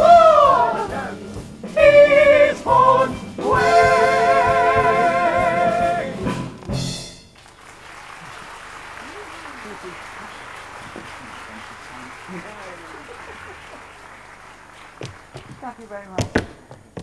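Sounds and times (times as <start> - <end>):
person singing with vibrato: 0.0 - 6.3
music hall song with band: 0.0 - 7.4
audience applause: 7.4 - 16.0.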